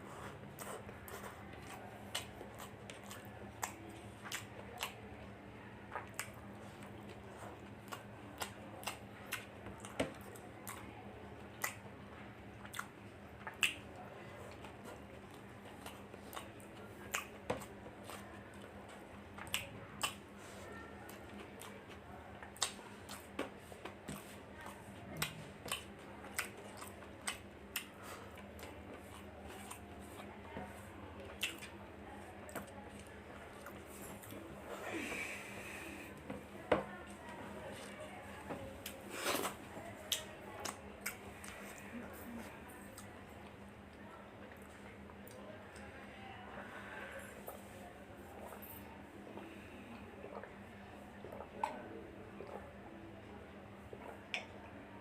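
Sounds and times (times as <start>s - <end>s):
mouth chewing smacks: 0.2s - 5.2s, 5.8s - 10.9s, 11.5s - 30.4s, 31.3s - 31.8s, 38.8s - 43.6s, 48.4s - 52.7s, 53.8s - 54.6s.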